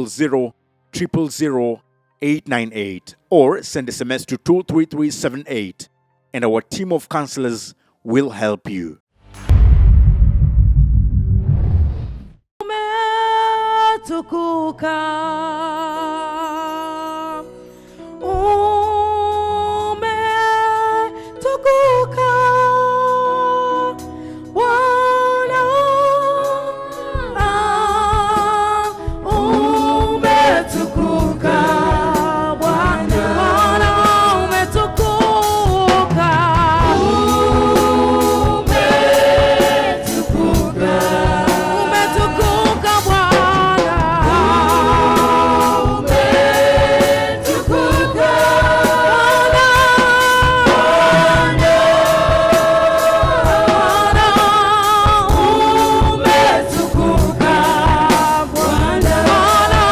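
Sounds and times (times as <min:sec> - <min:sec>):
gospel music with singing: 0:12.6 - 0:59.9.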